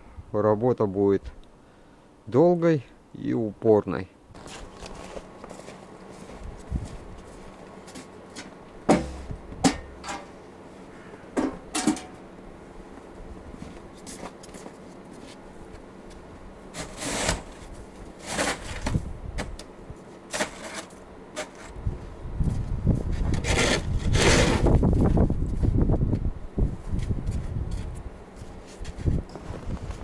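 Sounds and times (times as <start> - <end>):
snow shovel knocks: 8.9 - 10.3
snow shovel scraping: 16.8 - 17.6, 18.2 - 18.9, 20.3 - 21.7, 23.4 - 24.8.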